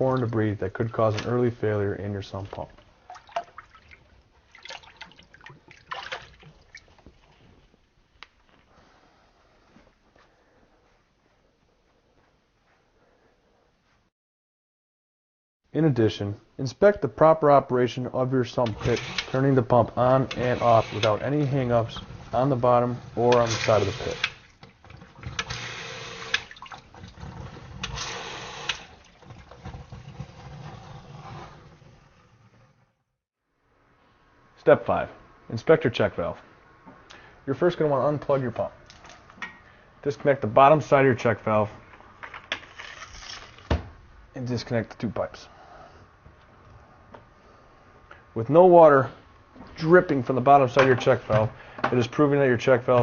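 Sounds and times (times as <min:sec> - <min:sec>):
water dripping and splashing: 0:02.4 - 0:07.4, 0:20.3 - 0:30.1
sump pump running: 0:18.6 - 0:29.9.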